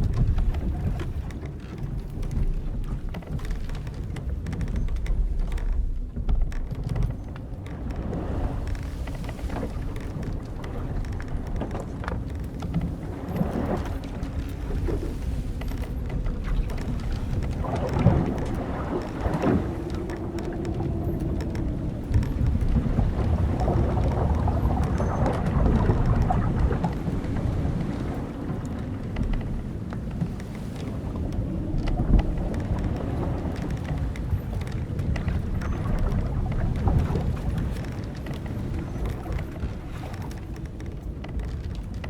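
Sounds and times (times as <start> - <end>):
ship timbers and ropes creaking: 0.0 - 42.0
wind and sea rumble: 0.0 - 42.0.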